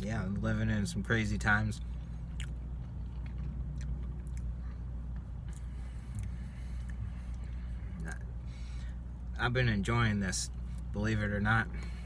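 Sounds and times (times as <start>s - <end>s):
steady low hum: 0.0s - 12.0s
quiet chewing: 1.8s - 9.0s.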